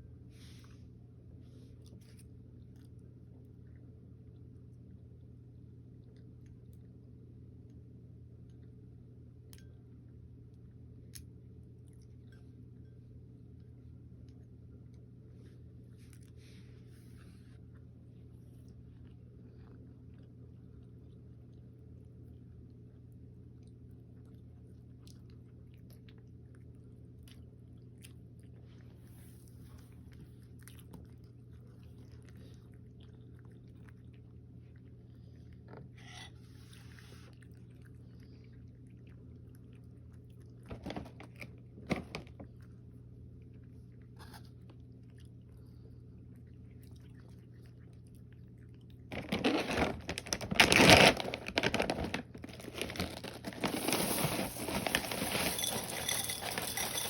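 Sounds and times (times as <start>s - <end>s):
chewing and crunching food: 1.6s - 57.0s.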